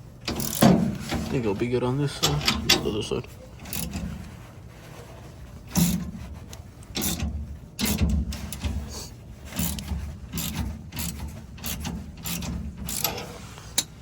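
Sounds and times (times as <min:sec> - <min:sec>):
ratchet wrench clicking: 0:00.2 - 0:00.7, 0:07.0 - 0:07.2, 0:09.6 - 0:13.9.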